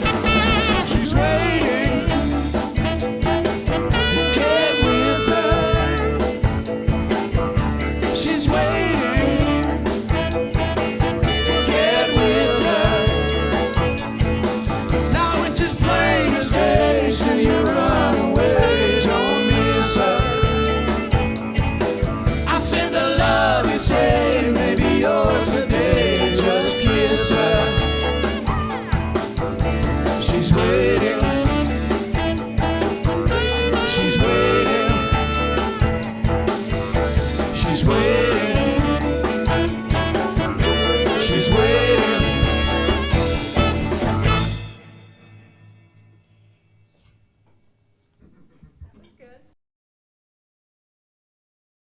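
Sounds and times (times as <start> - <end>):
person singing: 0.0 - 6.4, 8.0 - 13.9, 15.0 - 21.2, 22.4 - 29.1, 29.8 - 35.8, 37.4 - 43.6
drum and bass groove: 0.0 - 44.9
horn lines: 0.0 - 49.3.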